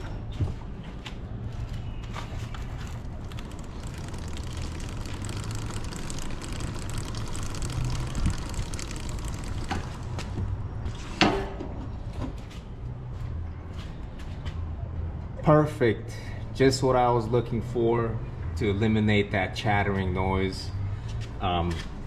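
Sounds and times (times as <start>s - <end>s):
motorcycle chain running over roller: 2.7s - 10.7s.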